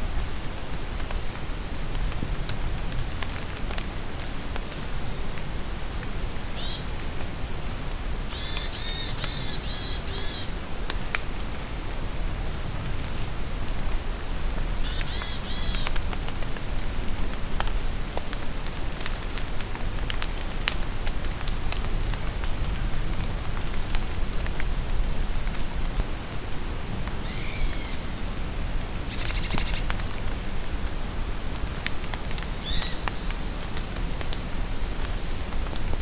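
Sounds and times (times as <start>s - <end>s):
rain falling in forest: 0.0s - 36.0s
songbirds calling: 4.6s - 6.0s, 6.6s - 7.2s, 8.1s - 10.6s, 14.8s - 16.0s, 26.0s - 28.3s, 29.1s - 31.2s, 32.4s - 33.7s.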